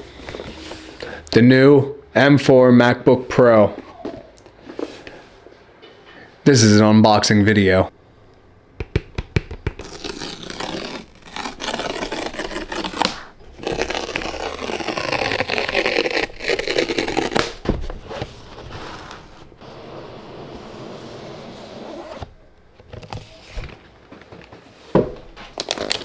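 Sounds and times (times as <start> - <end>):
cardboard scraping and rustling: 9.8 - 24.7.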